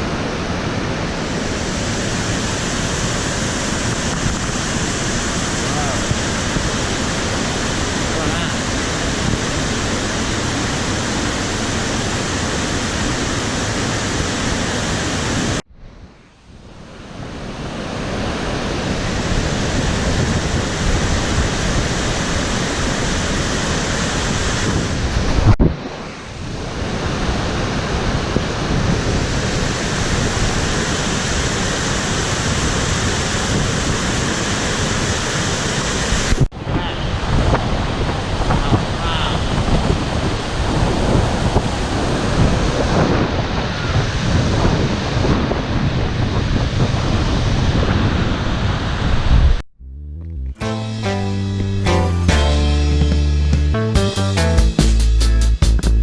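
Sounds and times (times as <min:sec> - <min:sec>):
floodwater rushing: 0:00.0 - 0:15.4.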